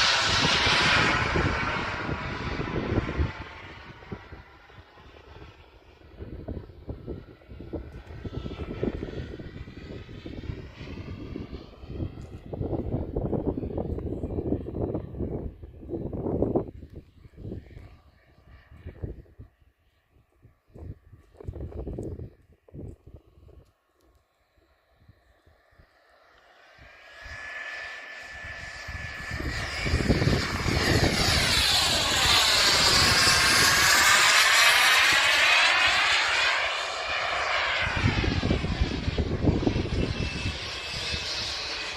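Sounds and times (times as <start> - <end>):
model jet turbine whine: 0.0 - 41.9.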